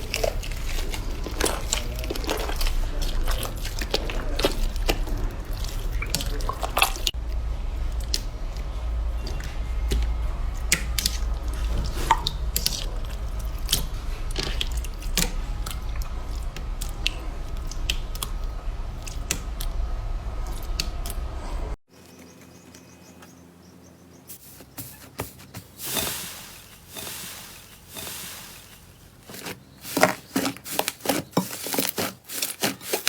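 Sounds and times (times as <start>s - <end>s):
low hum: 0.0s - 21.8s.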